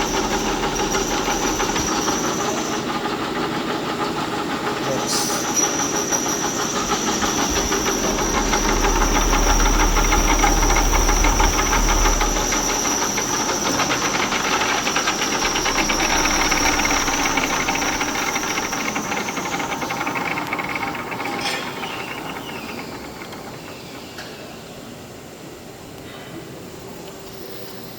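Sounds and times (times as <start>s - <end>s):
fine rapid ticking: 0.0s - 3.0s, 5.6s - 24.1s
metalworking machine whine: 0.0s - 25.4s.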